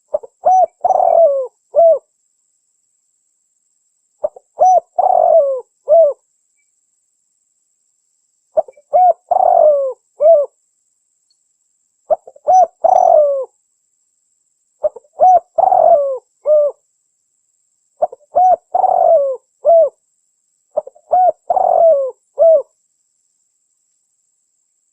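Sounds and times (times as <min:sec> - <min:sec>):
dove cooing: 0:00.0 - 0:02.1, 0:04.2 - 0:06.2, 0:08.6 - 0:10.6, 0:12.1 - 0:13.5, 0:14.8 - 0:16.8, 0:18.0 - 0:20.0, 0:20.8 - 0:22.7.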